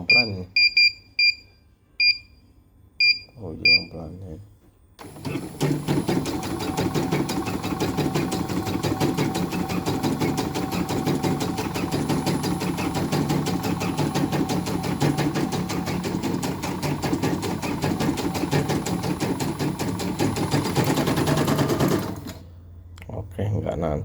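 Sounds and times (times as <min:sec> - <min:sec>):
embroidery machine stitching: 0:05.0 - 0:22.5.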